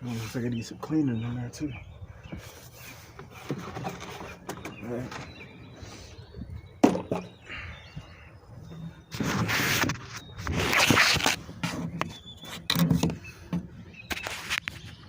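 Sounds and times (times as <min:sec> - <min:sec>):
engine parts scraping: 0:02.4 - 0:06.0, 0:08.6 - 0:15.0.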